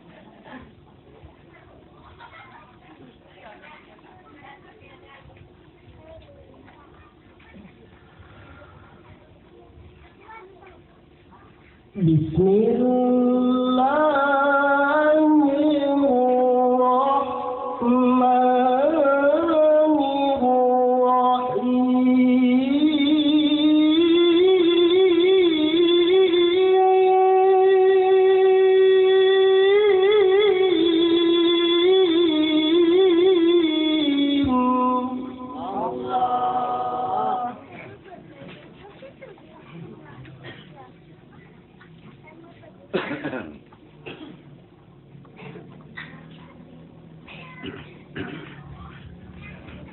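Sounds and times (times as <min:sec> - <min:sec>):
man reciting melodically: 0:12.0 - 0:37.7.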